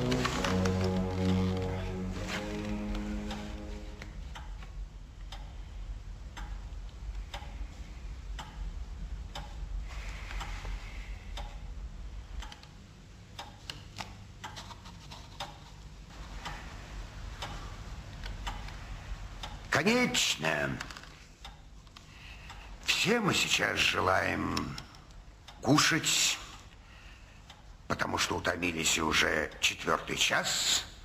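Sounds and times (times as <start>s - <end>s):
music: 0.0s - 4.3s
clock ticking: 0.0s - 31.0s.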